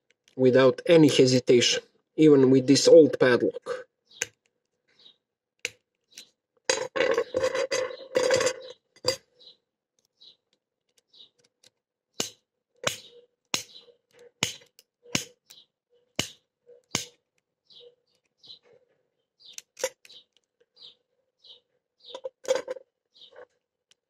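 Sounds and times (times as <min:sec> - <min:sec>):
padlock and picks rattling: 0:05.6 - 0:18.6, 0:19.4 - 0:20.7, 0:22.0 - 0:23.4
sharp metal clicks: 0:10.9 - 0:15.6, 0:16.2 - 0:17.2.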